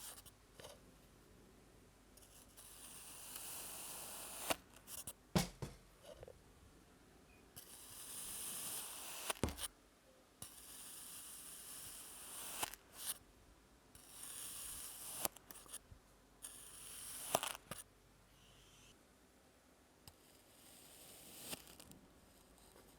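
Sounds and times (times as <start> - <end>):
blade slicing kinetic sand: 2.2 - 5.0, 7.6 - 9.7, 10.4 - 13.2, 14.0 - 15.7, 16.5 - 17.8, 20.2 - 21.8.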